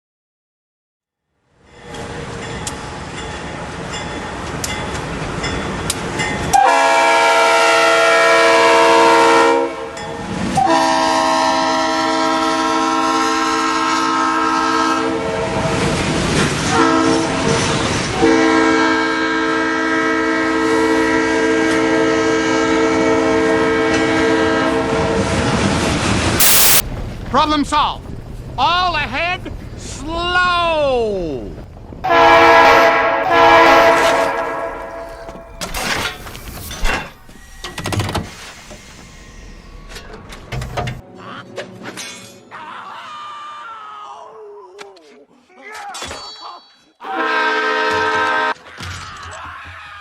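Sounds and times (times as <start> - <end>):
passing train rumble and clatter: 1.4 - 30.6, 31.4 - 42.5
train horn chord blasts: 6.5 - 15.6, 16.7 - 17.4, 18.2 - 25.0, 32.1 - 35.7, 47.1 - 48.6.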